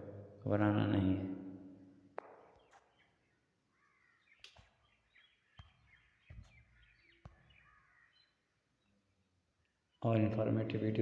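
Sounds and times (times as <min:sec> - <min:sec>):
faint bird chirps: 0:02.5 - 0:10.3.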